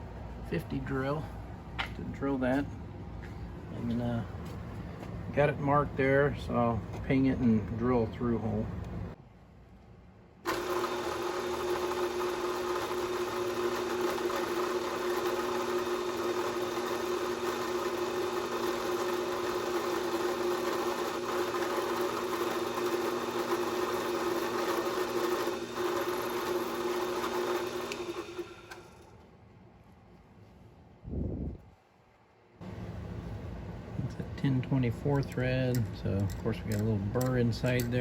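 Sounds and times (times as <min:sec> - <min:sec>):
electric drill drilling metal: 0:10.5 - 0:29.0.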